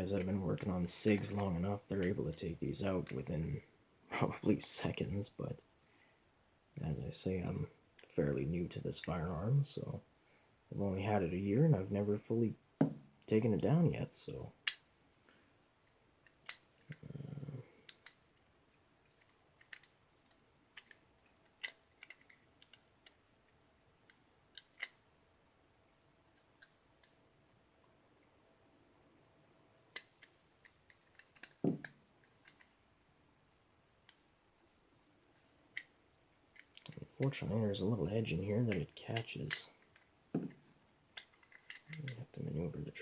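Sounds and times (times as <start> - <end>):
metal pistol parts clicking: 14.6 - 14.9, 16.2 - 17.0, 17.8 - 18.3, 19.0 - 23.2, 24.0 - 25.0, 26.3 - 27.6, 29.8 - 32.8, 34.1 - 37.0, 38.6 - 42.2.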